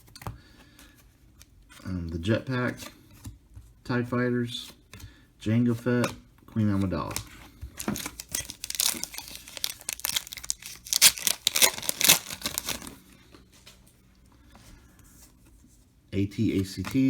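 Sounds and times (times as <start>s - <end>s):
wrapper tearing and crinkling: 7.8s - 13.0s.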